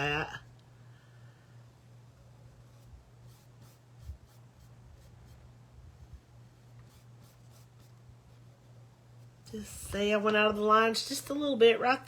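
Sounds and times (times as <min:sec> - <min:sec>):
steady low hum: 0:00.0 - 0:12.0
paintbrush strokes on board: 0:02.2 - 0:10.6.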